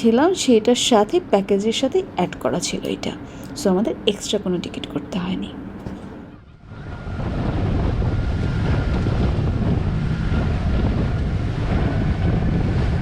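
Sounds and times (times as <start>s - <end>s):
boat engine drone: 0.0s - 13.0s
wind buffeting microphone: 5.8s - 13.0s.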